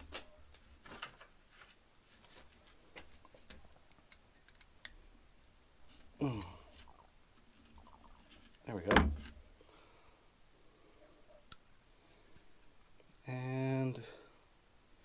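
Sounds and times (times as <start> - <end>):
small metal parts clicking: 4.1 - 5.0, 9.6 - 14.9.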